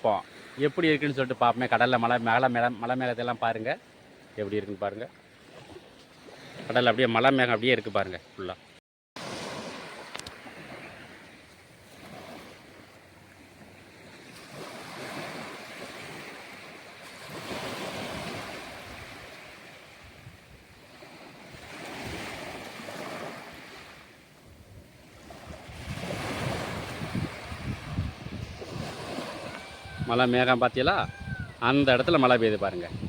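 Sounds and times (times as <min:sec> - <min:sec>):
sea waves washing: 0:09.2 - 0:33.0
wind on microphone: 0:20.0 - 0:20.8, 0:24.4 - 0:33.0.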